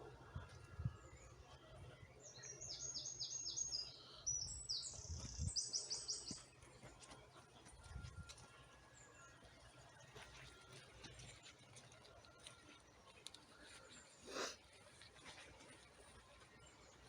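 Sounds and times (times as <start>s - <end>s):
small songbird singing: 2.1s - 6.5s.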